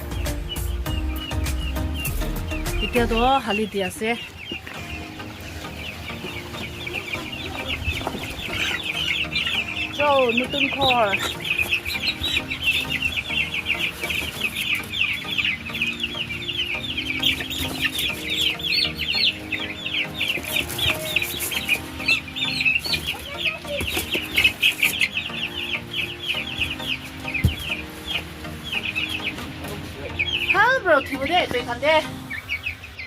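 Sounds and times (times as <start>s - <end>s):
chicks cheeping: 0.0s - 33.0s.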